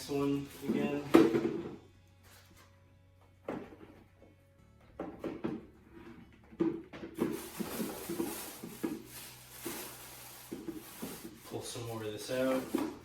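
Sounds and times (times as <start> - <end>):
plastic bag rustling: 0.0 - 1.2, 7.2 - 13.0
plastic pail clicks and knocks: 0.6 - 1.8, 5.0 - 5.7, 6.4 - 9.2.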